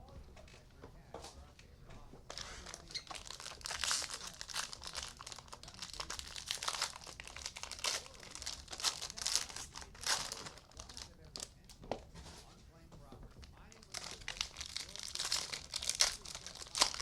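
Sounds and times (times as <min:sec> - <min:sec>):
card pack wrappers crinkling: 0:02.3 - 0:11.6, 0:13.4 - 0:17.0.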